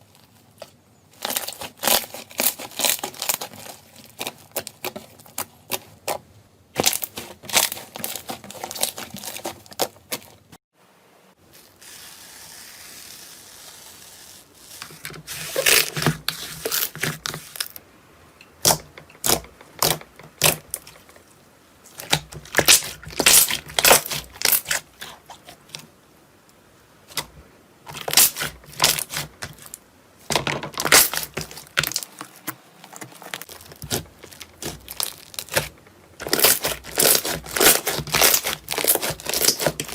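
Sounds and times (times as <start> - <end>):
soft hiss: 10.8 - 15.8.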